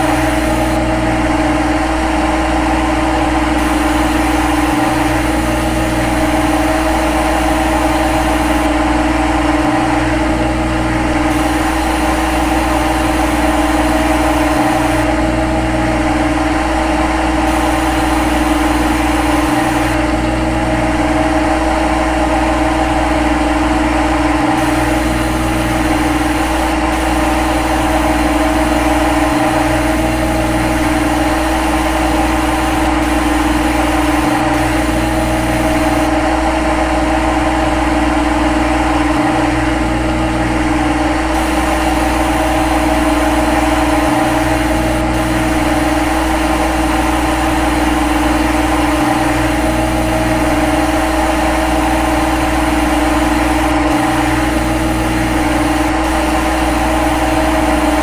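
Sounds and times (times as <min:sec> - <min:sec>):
steady mechanical hum: 0:00.0 - 0:58.0.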